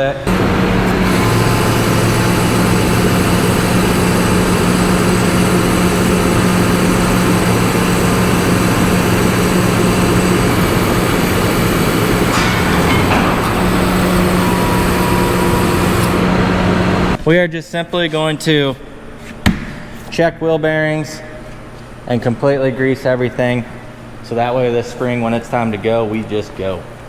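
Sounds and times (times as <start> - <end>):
loud mechanical drone: 0.0 - 17.2
low hum: 0.1 - 17.2.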